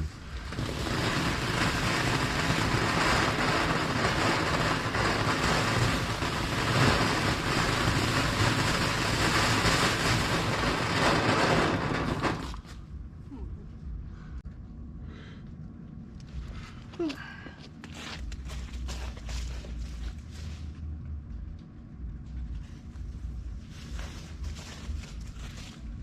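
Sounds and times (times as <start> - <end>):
firework crackling: 0.0 - 13.0.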